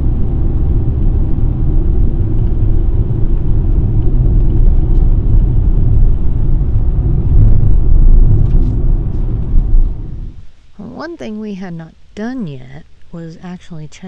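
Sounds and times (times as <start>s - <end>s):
car road and engine rumble: 0.0s - 11.1s.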